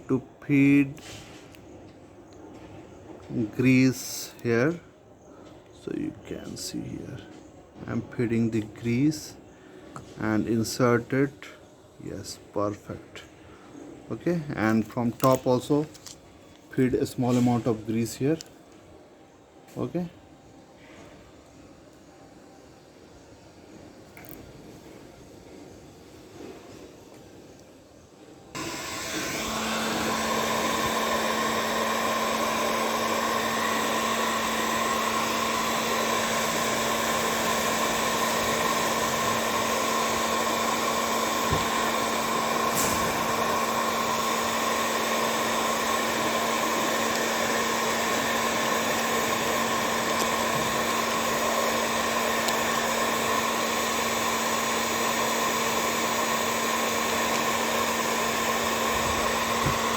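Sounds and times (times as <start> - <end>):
electric power tool whirring: 28.6 - 59.9.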